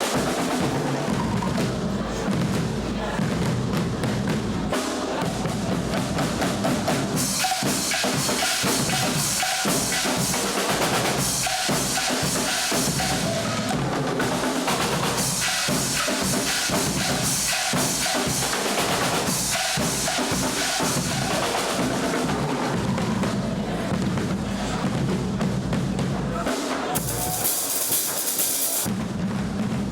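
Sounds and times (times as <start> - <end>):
snare and bass drums: 0.0 - 29.9
cymbals crashing: 7.0 - 22.7, 26.7 - 28.9.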